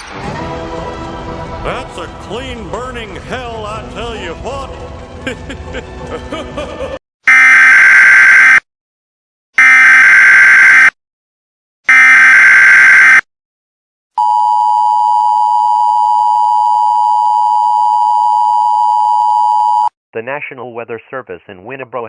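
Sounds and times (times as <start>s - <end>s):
two-tone attention signal: 7.3s - 8.6s, 9.6s - 10.9s, 11.9s - 13.2s.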